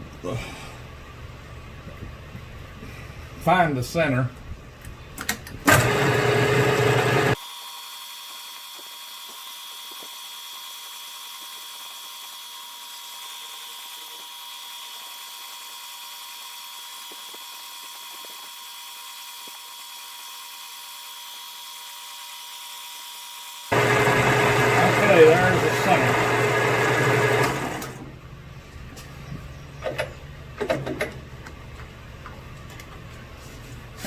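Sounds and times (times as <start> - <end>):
milling machine running: 5.7 - 7.4, 23.7 - 28.1.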